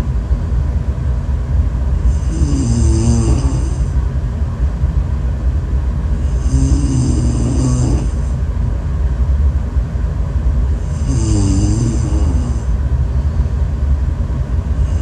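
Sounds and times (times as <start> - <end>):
steady low rumble: 0.0 - 15.0
person snoring: 2.0 - 3.9, 6.2 - 8.3, 10.8 - 12.7, 14.8 - 15.0.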